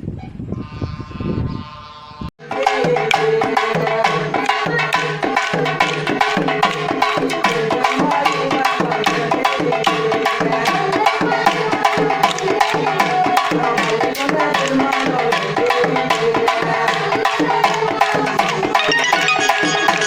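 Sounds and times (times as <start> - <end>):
fast percussion beat: 2.4 - 20.0
steady melody: 18.7 - 20.0.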